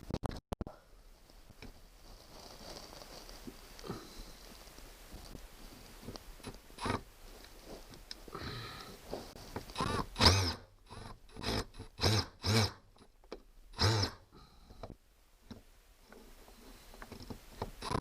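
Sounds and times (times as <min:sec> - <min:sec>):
screw squeaking and creaking: 0:06.4 - 0:07.1, 0:09.6 - 0:13.1, 0:17.0 - 0:18.0.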